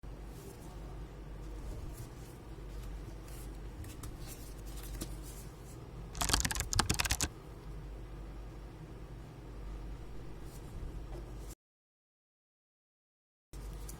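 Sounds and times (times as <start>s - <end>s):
laptop plastic clicking: 6.2s - 7.3s.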